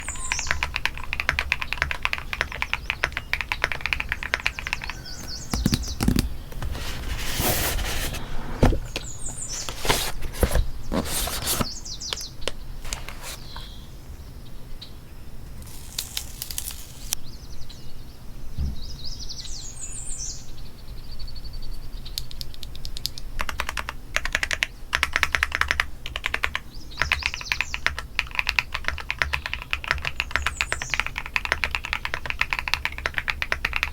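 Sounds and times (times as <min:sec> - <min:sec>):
mechanical keyboard typing: 0:00.0 - 0:06.3, 0:22.3 - 0:33.9.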